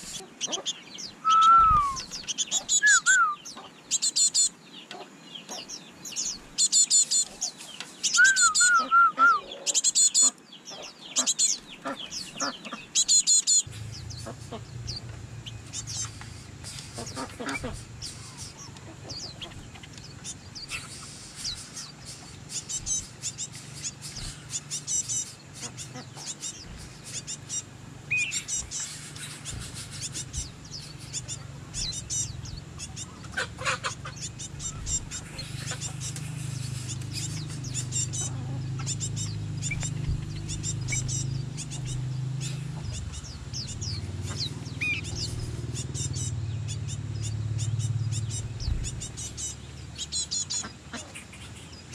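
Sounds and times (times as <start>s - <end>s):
birds chirping: 0.0s - 51.9s
chickens calling: 0.0s - 51.9s
low steady hum: 1.0s - 3.6s, 13.6s - 51.9s.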